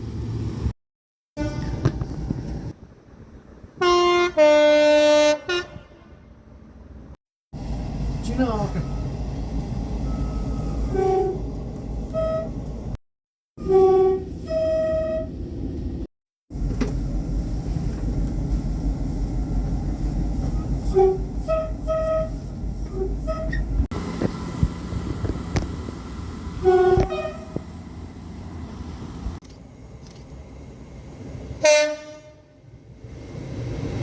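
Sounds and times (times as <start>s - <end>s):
low rumble of trains: 0.0s - 0.8s, 1.4s - 13.0s, 13.6s - 34.0s
two-tone train horn blasts: 1.4s - 1.9s, 3.8s - 6.4s, 10.8s - 11.5s, 12.1s - 12.5s, 13.6s - 15.4s, 20.9s - 23.6s, 26.6s - 27.6s, 31.6s - 32.6s.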